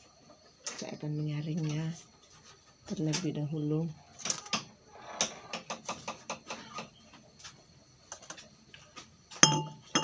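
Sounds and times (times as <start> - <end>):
kitchen utensils clicking and knocking: 9.4 - 10.0.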